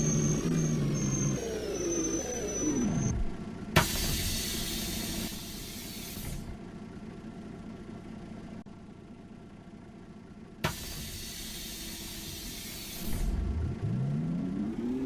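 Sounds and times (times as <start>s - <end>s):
bus engine rumble: 0.0s - 15.0s
compressed air hiss: 10.8s - 13.2s.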